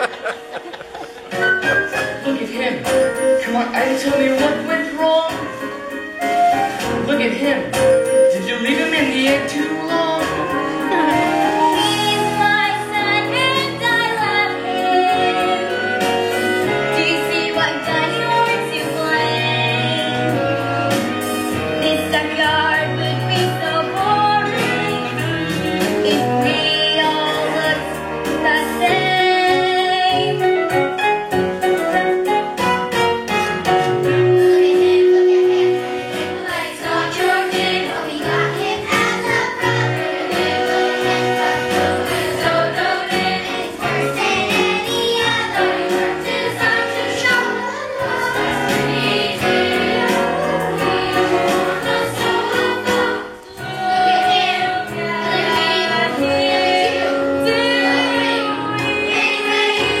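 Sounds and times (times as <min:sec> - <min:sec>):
singers performing show tune: 0:00.0 - 0:31.0, 0:33.6 - 1:00.0
instrumental accompaniment: 0:00.0 - 1:00.0.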